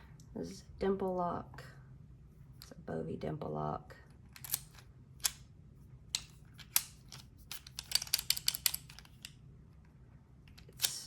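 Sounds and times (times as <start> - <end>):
metallic clicks of lock picking: 6.2 - 9.3.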